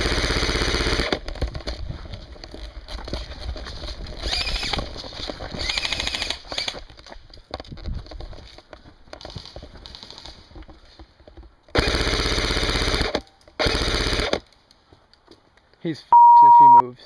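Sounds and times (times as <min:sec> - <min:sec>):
airsoft gun full-auto fire: 0:00.0 - 0:01.2, 0:11.8 - 0:14.4.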